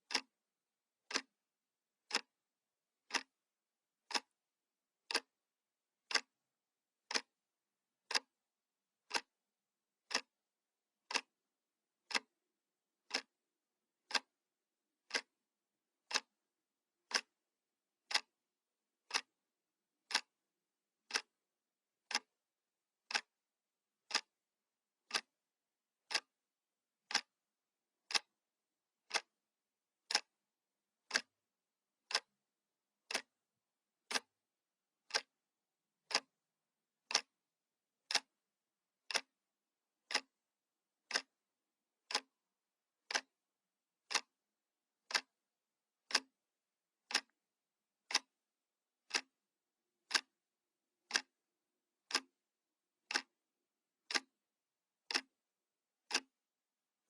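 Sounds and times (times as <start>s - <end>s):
clock ticking: 0.0s - 0.3s, 1.1s - 1.3s, 2.0s - 2.3s, 3.0s - 3.3s, 4.0s - 4.4s, 5.1s - 5.3s, 6.0s - 6.4s, 7.1s - 7.3s, 8.1s - 8.4s, 9.0s - 9.3s, 10.1s - 10.3s, 11.0s - 11.3s, 12.1s - 12.3s, 13.0s - 13.3s, 14.1s - 14.3s, 15.0s - 15.4s, 16.0s - 16.4s, 17.0s - 17.4s, 18.1s - 18.4s, 19.0s - 19.3s, 20.1s - 20.4s, 21.0s - 21.4s, 22.0s - 22.4s, 23.0s - 23.3s, 24.0s - 24.3s, 25.0s - 25.3s, 26.1s - 26.3s, 27.0s - 27.4s, 28.0s - 28.4s, 29.0s - 29.3s, 30.1s - 30.4s, 31.0s - 31.4s, 32.0s - 32.4s, 33.1s - 33.4s, 34.1s - 34.3s, 35.0s - 35.4s, 36.0s - 36.4s, 37.1s - 37.4s, 38.1s - 38.4s, 39.1s - 39.3s, 40.1s - 40.4s, 41.1s - 41.4s, 42.1s - 42.4s, 43.1s - 43.3s, 44.1s - 44.3s, 45.1s - 45.3s, 46.1s - 46.4s, 47.1s - 47.4s, 48.1s - 48.3s, 49.1s - 49.4s, 50.1s - 50.4s, 51.1s - 51.3s, 52.1s - 52.4s, 53.0s - 53.3s, 54.1s - 54.3s, 55.1s - 55.3s, 56.1s - 56.3s.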